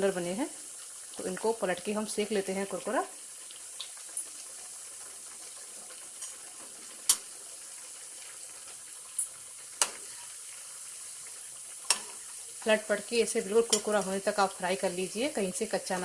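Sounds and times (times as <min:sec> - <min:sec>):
food deep-frying in oil: 0:00.0 - 0:16.0
sharp clicks in pan: 0:03.8 - 0:04.0, 0:07.1 - 0:07.3, 0:09.2 - 0:10.0, 0:11.9 - 0:12.2.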